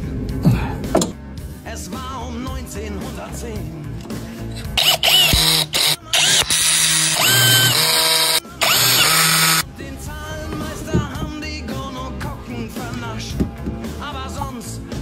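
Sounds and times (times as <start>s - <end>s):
electric drill whining: 4.5s - 9.6s.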